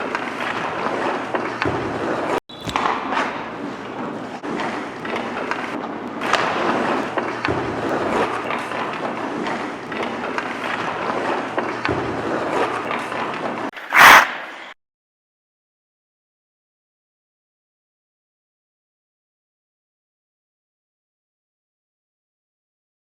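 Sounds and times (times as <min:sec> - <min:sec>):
sticks and pucks knocking: 0:00.0 - 0:14.7
skates scraping on ice: 0:00.0 - 0:14.8.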